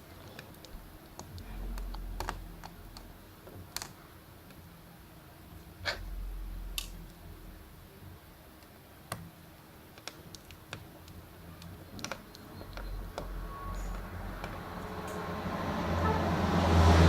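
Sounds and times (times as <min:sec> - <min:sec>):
small tools clicking and tapping: 0:09.9 - 0:15.2.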